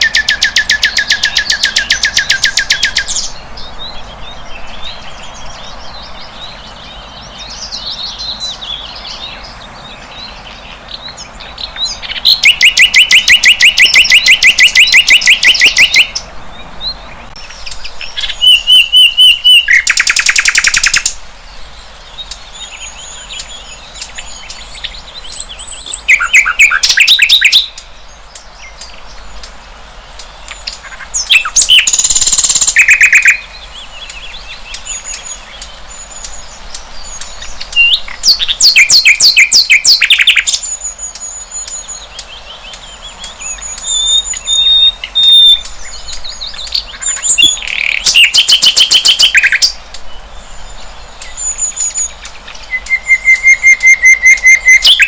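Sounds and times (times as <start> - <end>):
bird trilling song: 0.0 - 55.0
repeated lower bird notes: 11.0 - 21.2, 22.2 - 55.0.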